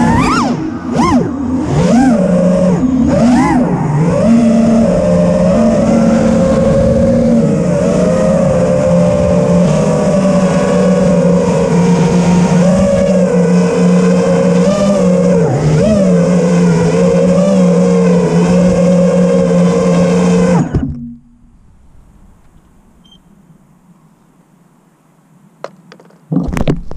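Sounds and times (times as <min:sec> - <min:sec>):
quadcopter motors whining: 0:00.0 - 0:20.8.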